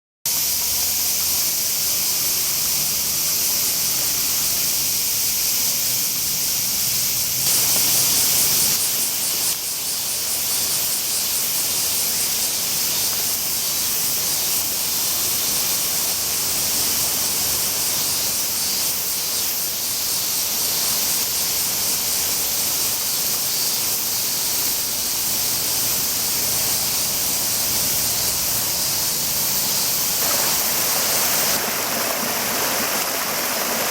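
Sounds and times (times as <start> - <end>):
stream water flowing and splashing: 30.2 - 33.9.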